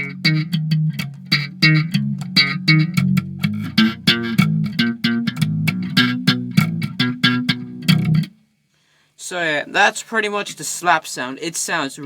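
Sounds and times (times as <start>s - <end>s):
slap bass riff: 0.0s - 8.4s.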